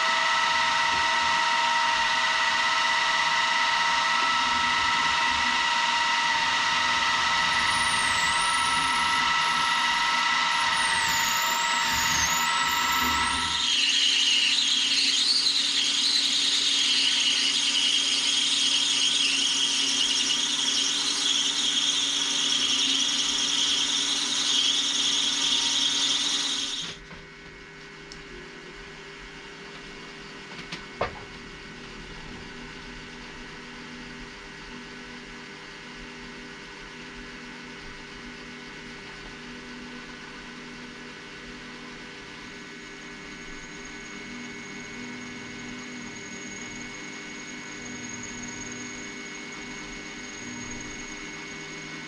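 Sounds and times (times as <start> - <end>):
drill bit squealing in metal: 7.0 - 27.0, 42.9 - 51.8.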